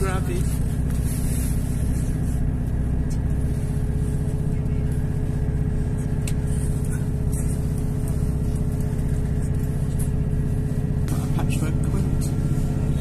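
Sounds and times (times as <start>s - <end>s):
train rumble: 0.0s - 13.0s.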